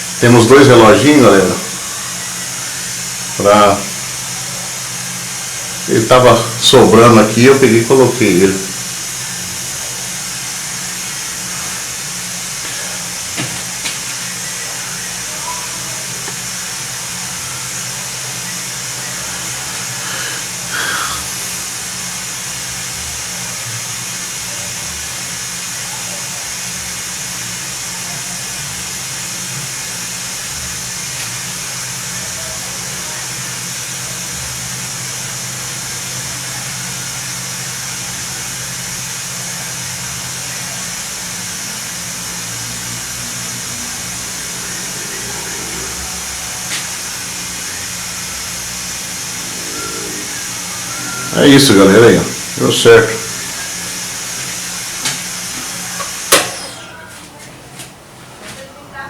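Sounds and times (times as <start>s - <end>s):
air compressor running: 0.0s - 58.3s
brief louder noise: 43.8s - 54.4s.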